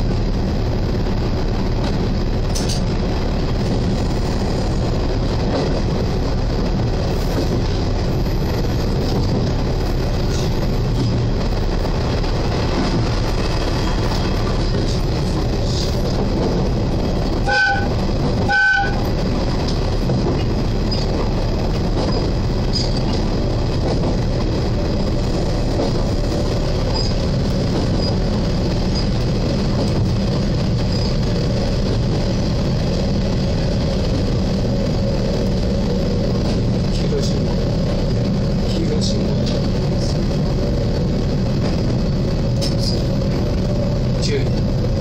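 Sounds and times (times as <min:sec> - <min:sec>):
railcar engine droning: 0:00.0 - 0:45.0
train horn toots: 0:17.4 - 0:19.1.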